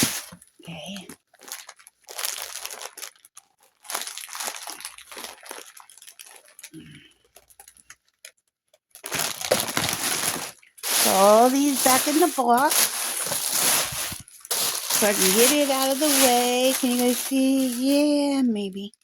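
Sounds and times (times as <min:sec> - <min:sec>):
packaging wrap crinkling: 0:00.0 - 0:08.2, 0:08.9 - 0:18.5.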